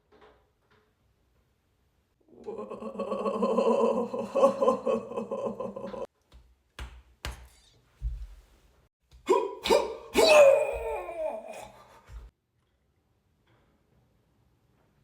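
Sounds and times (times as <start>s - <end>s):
person's long wordless vocal noise: 2.2s - 6.1s, 9.3s - 12.3s.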